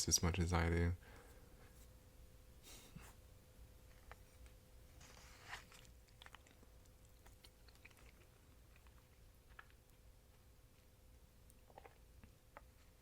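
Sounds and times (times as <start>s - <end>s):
faint steady hum: 0.0s - 13.0s
person chewing fruit: 5.0s - 10.9s, 11.5s - 13.0s.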